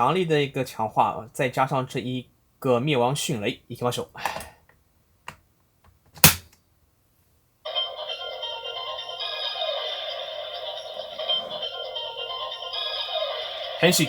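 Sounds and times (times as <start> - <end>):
electronic toy tune: 7.7 - 14.0.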